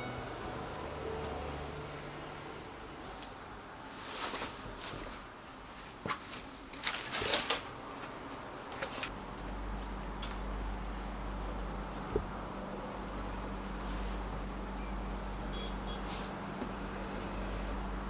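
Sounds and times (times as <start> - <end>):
rustling and handling noises: 3.0 - 10.6.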